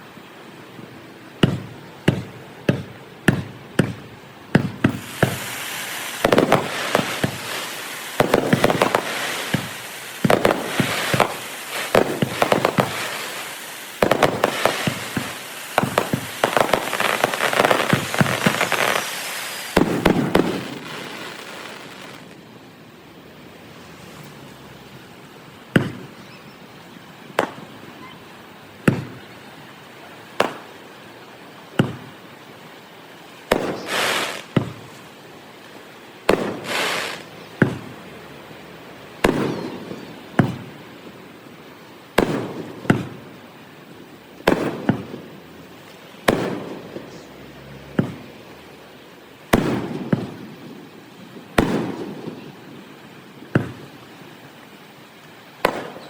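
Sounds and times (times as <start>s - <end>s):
fireworks crackling hiss: 0.0s - 56.0s
fireworks booming: 1.4s - 22.4s, 25.7s - 26.2s, 27.3s - 27.9s, 28.8s - 29.3s, 30.4s - 30.8s, 31.8s - 32.1s, 33.5s - 35.0s, 36.3s - 38.1s, 39.1s - 40.8s, 42.2s - 43.4s, 44.4s - 45.4s, 46.2s - 48.5s, 49.5s - 54.0s, 55.6s - 56.0s.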